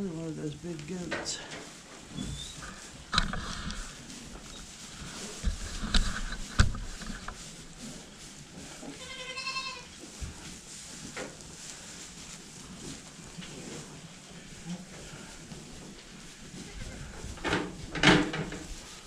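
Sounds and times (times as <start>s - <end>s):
knocks and thumps: 5.3s - 7.4s, 17.2s - 18.8s
goat bleating: 8.9s - 9.9s.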